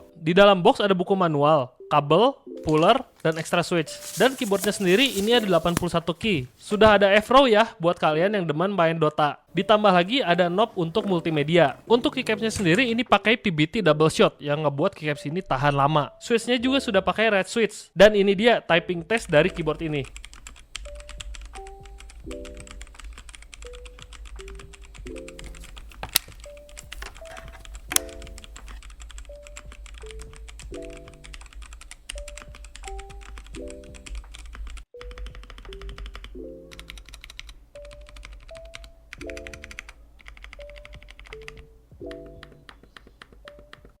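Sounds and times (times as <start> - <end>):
light background tune: 0.0 - 8.5, 9.5 - 17.4, 18.3 - 44.0
mechanical keyboard typing: 19.4 - 44.0.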